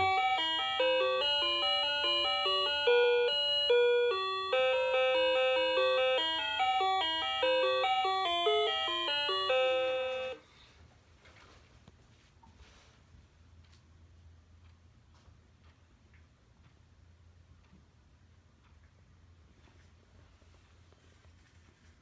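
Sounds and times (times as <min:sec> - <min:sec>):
clock ticking: 0:00.0 - 0:10.4, 0:15.5 - 0:19.8
music box melody: 0:00.0 - 0:10.4.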